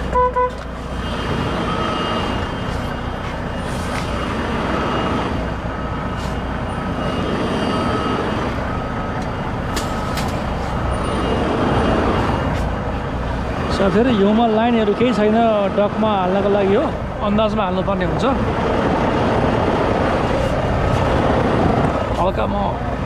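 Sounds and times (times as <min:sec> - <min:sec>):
reversing alarm beeping: 0:00.0 - 0:17.0
diesel truck engine running: 0:00.0 - 0:23.0.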